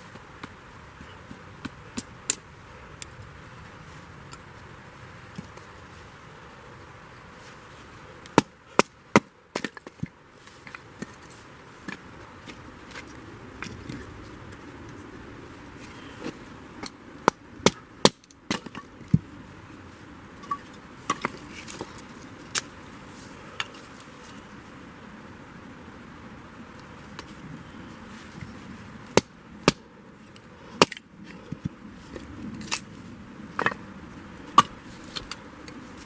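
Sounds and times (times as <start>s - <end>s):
blade splitting firewood: 8.3s - 11.2s, 16.2s - 19.2s, 29.1s - 29.9s, 30.7s - 32.9s.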